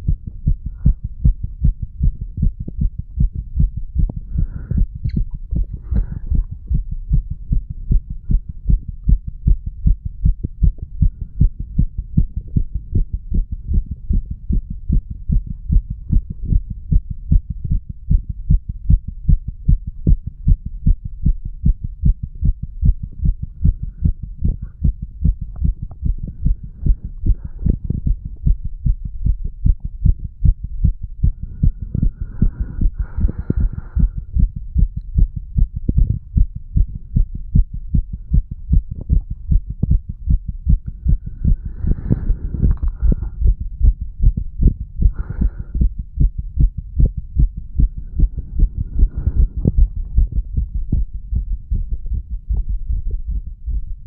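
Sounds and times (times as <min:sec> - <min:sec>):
heartbeat thumps: 0:00.0 - 0:54.0.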